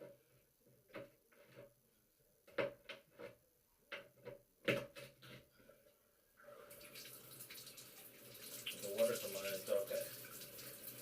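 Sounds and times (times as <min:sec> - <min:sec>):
water running from faucet: 0:06.6 - 0:11.0.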